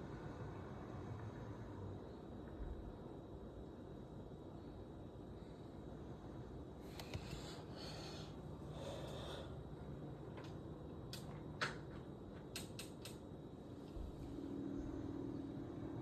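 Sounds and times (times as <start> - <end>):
faint outdoor rumble: 13.1 - 16.0
low engine-like hum: 13.5 - 16.0.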